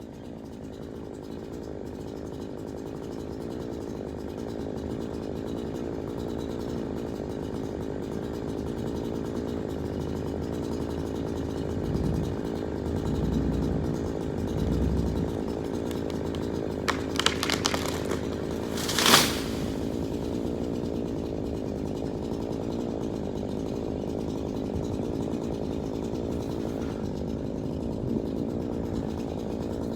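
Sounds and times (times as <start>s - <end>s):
chainsaw running under load: 1.7s - 29.9s
wind rumbling on microphone: 11.6s - 19.0s
sharp cracks: 11.9s - 20.8s.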